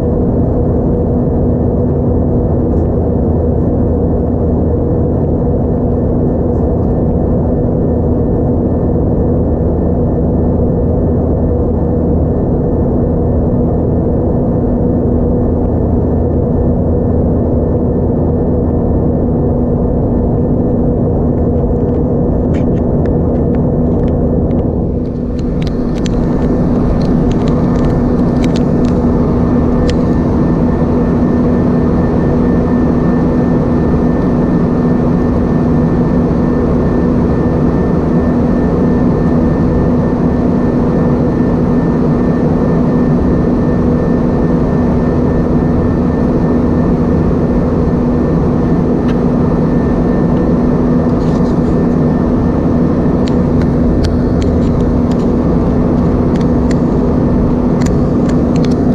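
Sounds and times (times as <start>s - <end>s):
airplane cabin drone: 0.0s - 58.9s.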